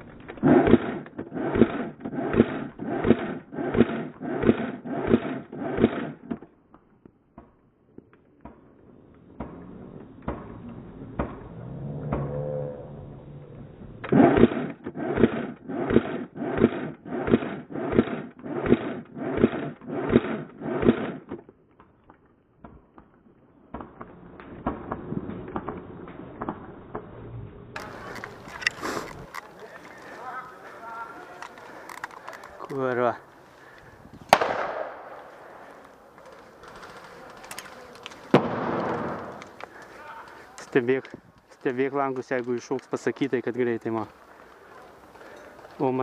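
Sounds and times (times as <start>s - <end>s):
crunching footsteps: 27.8s - 46.0s.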